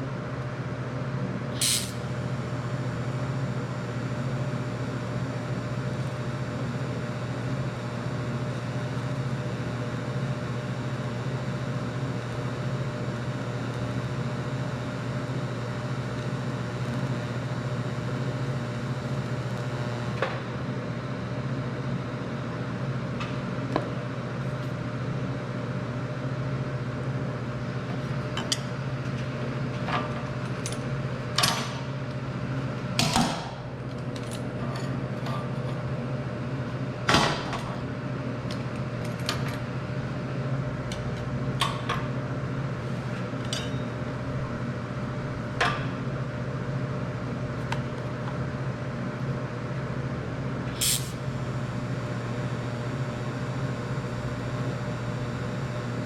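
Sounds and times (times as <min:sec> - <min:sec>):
welder humming and hissing: 0:01.4 - 0:03.2, 0:50.6 - 0:56.0.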